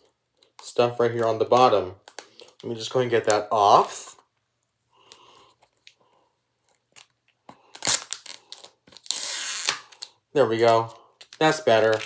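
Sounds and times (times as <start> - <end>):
plastic wrap crackling: 6.7 - 12.0.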